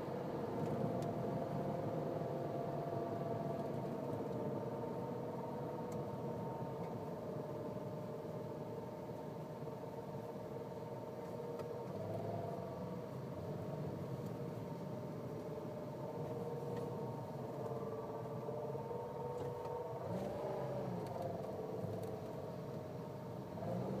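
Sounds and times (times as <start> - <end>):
car transmission whine: 0.0 - 24.0
low rumble: 11.8 - 24.0.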